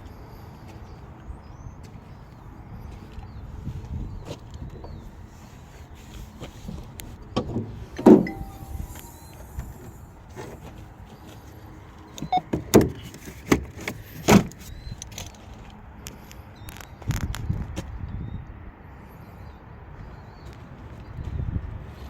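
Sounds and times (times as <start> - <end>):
sharp knocks and clunks: 7.4 - 8.4.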